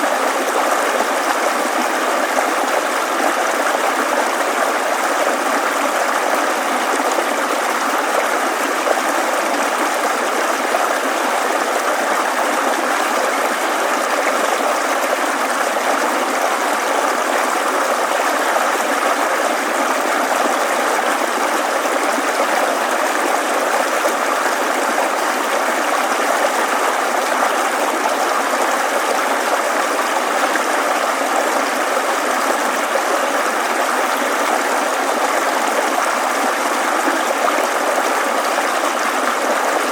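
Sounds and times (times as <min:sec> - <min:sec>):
babbling brook: 0:00.0 - 0:39.9.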